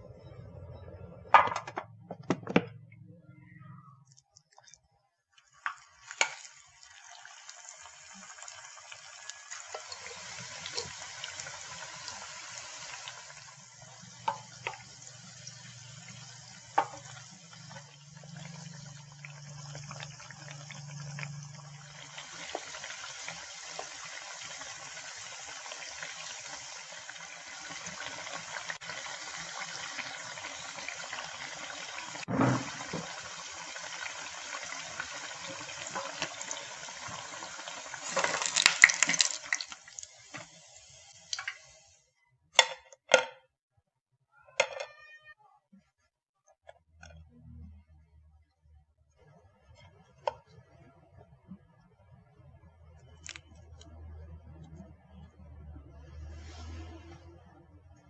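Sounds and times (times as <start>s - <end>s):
food sizzling in hot oil: 5.4s - 42.0s.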